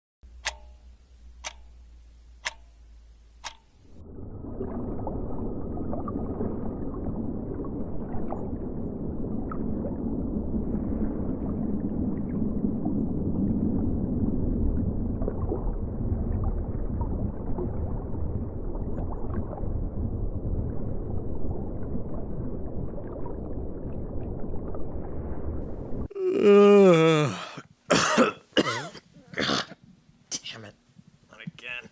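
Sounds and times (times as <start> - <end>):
steady low noise: 0.2 - 26.2
sharp ticks: 0.4 - 1.8, 2.4 - 2.8, 3.4 - 3.8
man coughing: 27.3 - 29.8.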